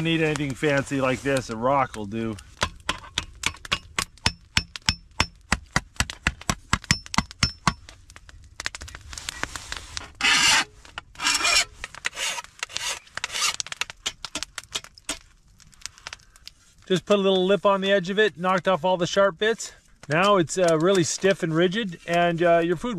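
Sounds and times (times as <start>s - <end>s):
scraping against steel edge: 10.2s - 14.4s.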